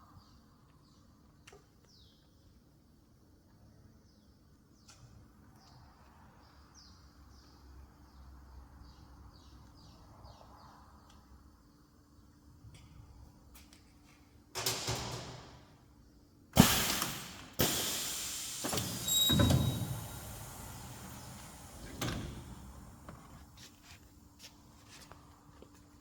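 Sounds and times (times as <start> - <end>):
machine clunk: 14.6 - 15.7, 16.6 - 23.3
welding machine hissing: 16.6 - 23.1.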